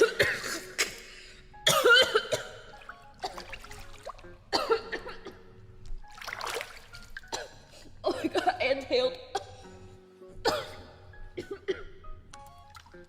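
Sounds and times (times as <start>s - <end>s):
woman coughing and sputtering: 0.0s - 3.5s, 4.5s - 5.5s, 7.3s - 9.7s, 10.4s - 12.0s.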